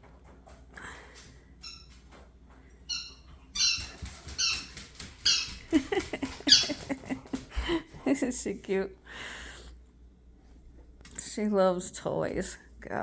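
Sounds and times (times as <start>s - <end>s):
dog toy squeaking: 2.9s - 5.6s, 6.5s - 6.8s.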